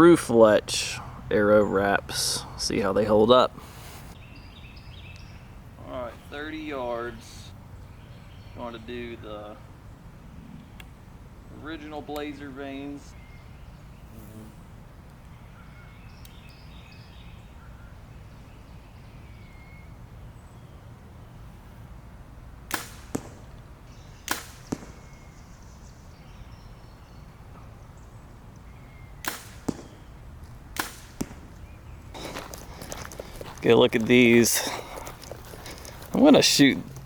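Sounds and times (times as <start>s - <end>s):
arrow striking target: 22.7s - 23.6s, 24.2s - 25.2s, 29.2s - 30.1s, 30.7s - 31.7s
faint bird chirps: 23.9s - 30.2s.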